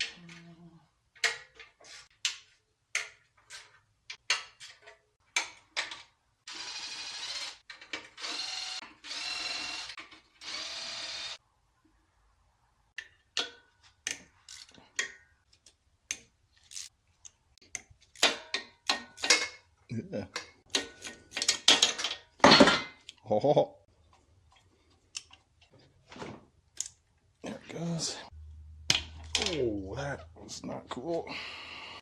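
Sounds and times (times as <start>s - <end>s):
cordless power tool running: 8.2s - 11.4s.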